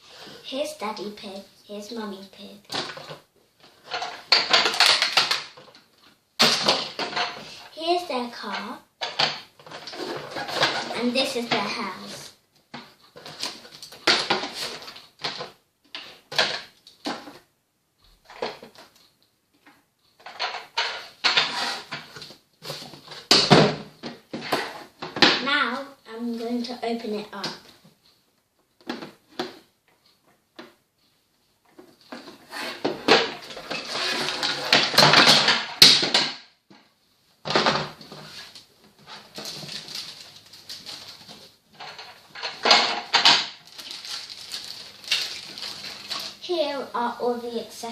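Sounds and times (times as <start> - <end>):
plastic toy pieces rustling and clattering: 2.7 - 17.4, 20.2 - 25.3, 31.8 - 36.3, 37.5 - 46.4
plastic packaging rustling: 38.2 - 46.4.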